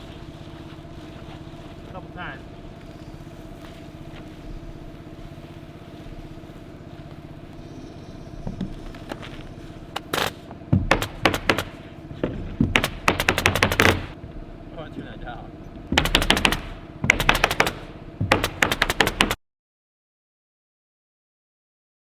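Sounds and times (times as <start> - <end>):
engine hum: 0.0 - 19.4
fasteners driven with loud clacks: 10.0 - 14.2, 15.9 - 19.4.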